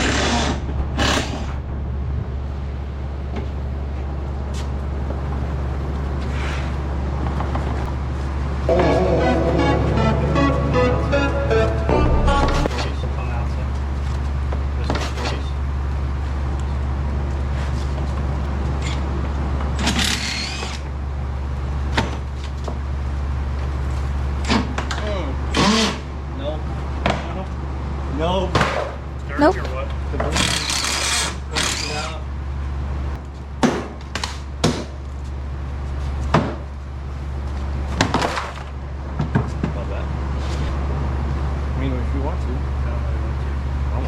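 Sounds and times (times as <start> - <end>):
steady low hum: 0.0 - 18.6.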